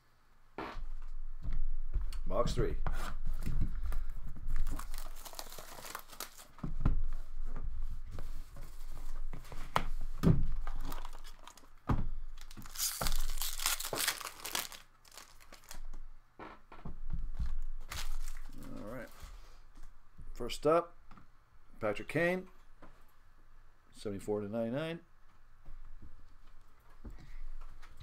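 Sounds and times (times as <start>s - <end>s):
wrapping tearing and crinkling: 3.9s - 6.6s, 10.6s - 15.9s, 17.8s - 19.2s.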